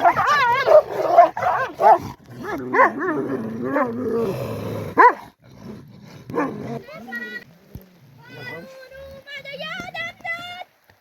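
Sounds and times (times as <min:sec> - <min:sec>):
dog yelping: 0:00.0 - 0:02.0
dog growling: 0:00.0 - 0:07.2.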